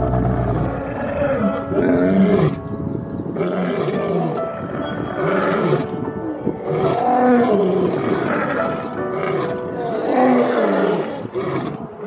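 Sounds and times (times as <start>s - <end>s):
large animal roaring: 0.0s - 2.6s, 3.4s - 4.4s, 5.2s - 5.9s, 6.6s - 12.0s
background music: 0.0s - 12.0s.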